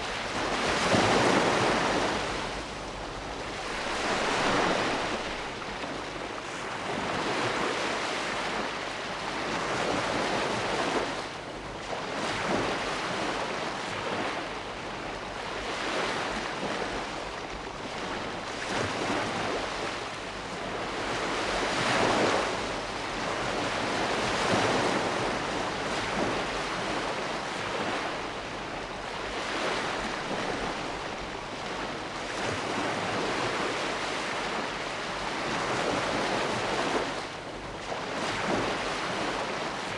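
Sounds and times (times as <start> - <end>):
sea waves breaking on shore: 0.0 - 39.9
wind noise on microphone: 0.0 - 39.9.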